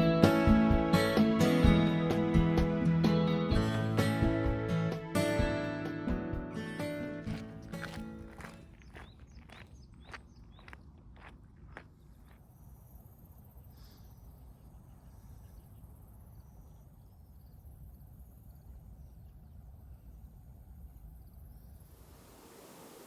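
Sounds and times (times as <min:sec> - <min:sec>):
low wind rumble: 0:07.4 - 0:23.0
high-pitched insect trill: 0:12.1 - 0:22.8.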